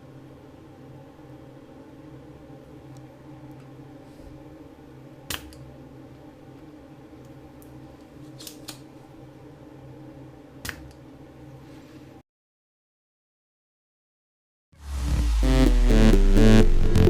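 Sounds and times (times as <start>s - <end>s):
steady low hum: 14.8s - 17.0s.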